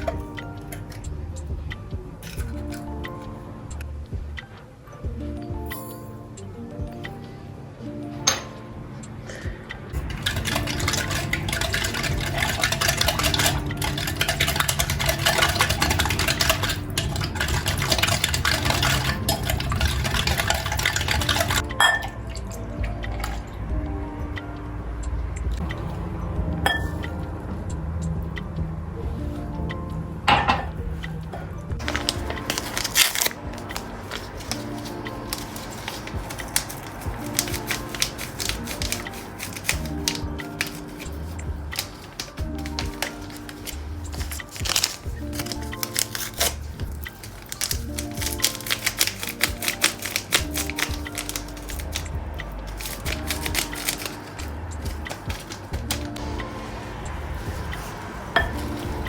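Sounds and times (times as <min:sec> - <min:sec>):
soft background music: 0:00.0 - 0:59.0
water running: 0:10.0 - 0:22.0, 0:31.8 - 0:56.2.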